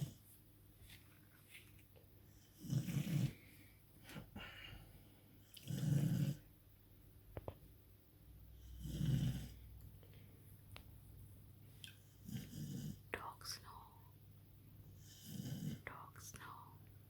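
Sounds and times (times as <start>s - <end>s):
dog snoring loudly: 0.0s - 0.2s, 2.3s - 3.5s, 5.5s - 6.5s, 8.6s - 9.7s, 12.0s - 13.1s, 15.0s - 15.9s.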